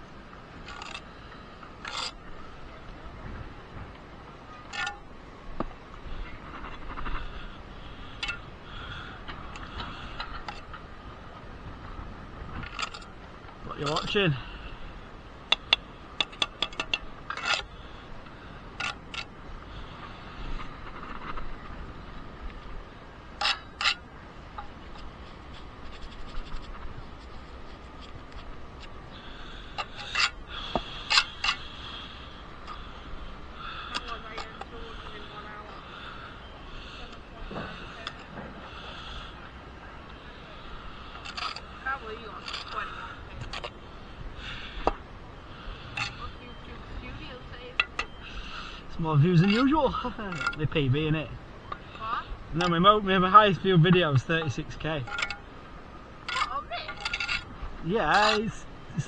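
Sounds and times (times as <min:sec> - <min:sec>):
steady background hiss: 0:00.0 - 0:59.0
steel clinking on brick: 0:53.9 - 0:55.5, 0:56.3 - 0:58.6.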